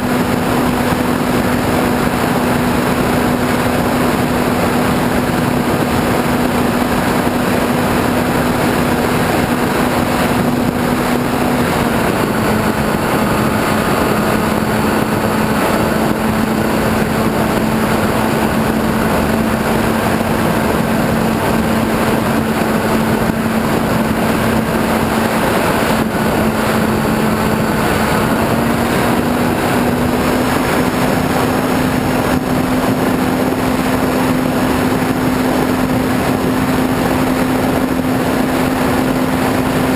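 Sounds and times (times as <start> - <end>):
electric motor and propeller drone: 0.0 - 39.9
wind rush: 0.0 - 39.9.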